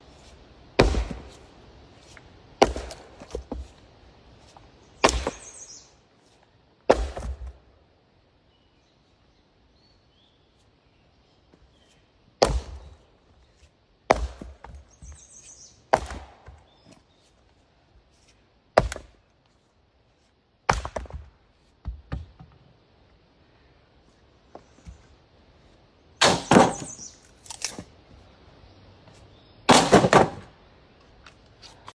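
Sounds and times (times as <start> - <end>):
axe splitting wood: 0.8 - 1.4, 2.6 - 3.6, 5.0 - 5.6, 6.9 - 7.6, 12.4 - 13.0, 14.1 - 15.2, 15.9 - 16.7, 18.8 - 19.2, 20.7 - 22.4, 26.2 - 27.9, 29.7 - 30.5.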